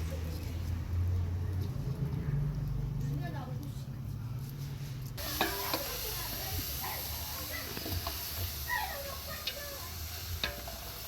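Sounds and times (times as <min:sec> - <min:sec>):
faint background voices: 0:00.0 - 0:11.0
meat sizzling in a pot: 0:05.2 - 0:11.0.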